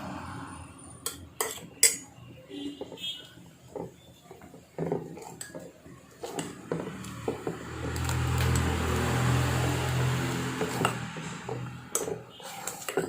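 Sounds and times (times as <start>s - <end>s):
metal utensils clinking and scraping: 1.0s - 2.2s, 3.7s - 13.0s.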